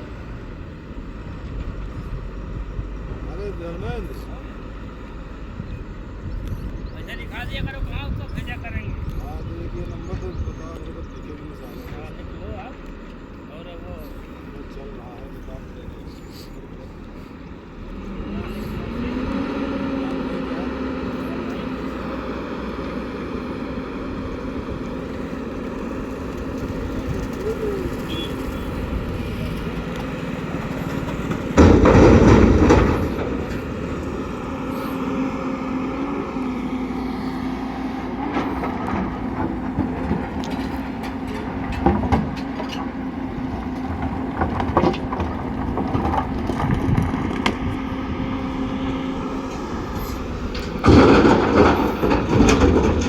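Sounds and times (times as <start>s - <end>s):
diesel earthmoving machinery running: 0.0s - 53.0s
sharp knocks and clanks: 30.6s - 35.0s, 38.2s - 47.8s, 48.8s - 53.0s.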